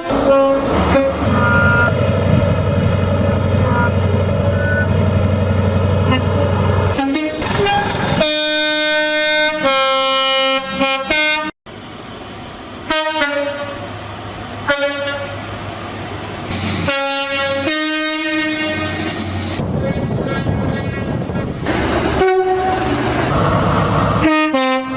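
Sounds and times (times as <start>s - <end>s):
two-tone train horn blasts: 0.0s - 1.9s, 7.0s - 11.5s, 12.9s - 13.9s, 14.6s - 15.4s, 16.5s - 19.2s, 22.2s - 22.9s, 24.2s - 24.9s
train rumble: 0.0s - 10.2s, 11.7s - 24.9s.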